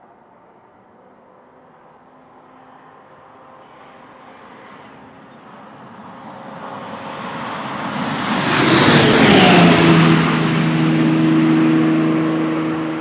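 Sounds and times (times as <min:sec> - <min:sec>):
race car passing at speed: 0:03.6 - 0:13.0.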